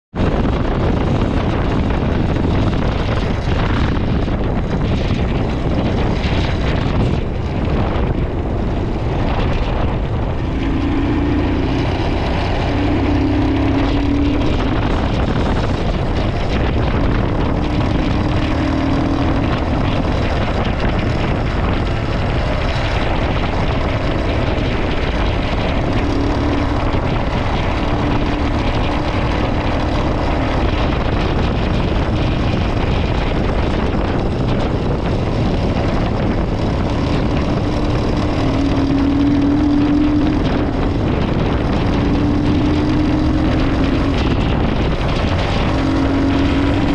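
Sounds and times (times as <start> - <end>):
wind noise: 0.1 - 46.9
motorcycle engine under load: 0.2 - 46.9.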